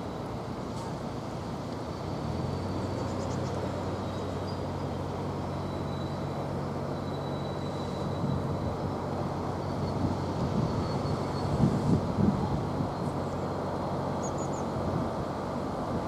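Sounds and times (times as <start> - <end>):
train low hum: 0.0 - 16.0
faint thin high whine: 3.9 - 12.0.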